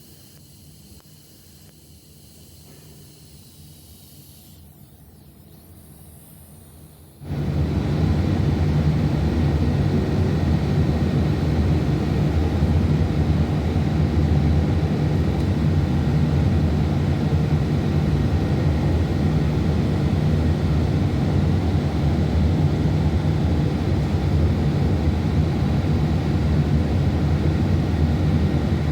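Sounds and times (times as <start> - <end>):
machine drone with low hum: 4.1 - 28.9.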